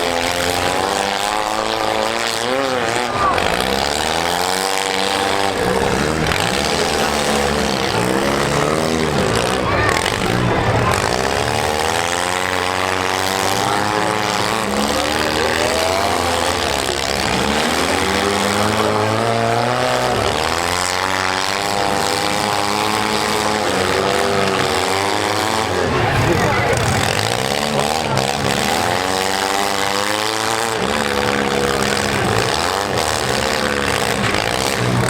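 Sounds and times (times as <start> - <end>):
small car engines revving: 0.0 - 35.0.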